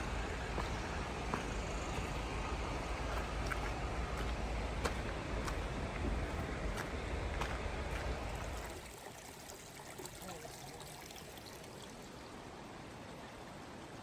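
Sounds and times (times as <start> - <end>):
footsteps on a trail: 0.0 - 8.8
stream water trickling: 0.0 - 14.0.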